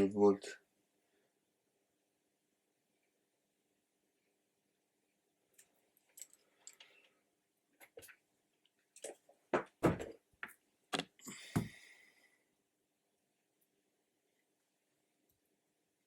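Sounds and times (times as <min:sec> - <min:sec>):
heavy thumps: 0:11.5 - 0:11.8.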